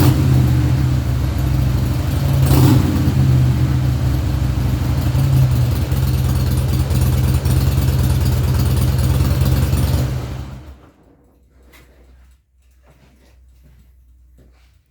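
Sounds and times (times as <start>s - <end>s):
motorcycle engine idling: 0.0s - 11.0s.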